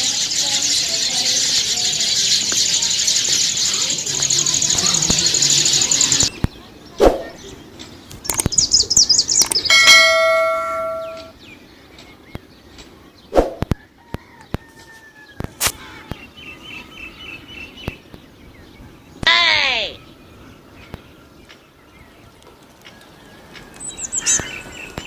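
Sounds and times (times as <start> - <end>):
bird chirps: 0.0 - 13.3, 22.9 - 25.0
sharp clicks: 8.1 - 8.7, 9.3 - 9.8
bell-like ring: 9.7 - 11.3.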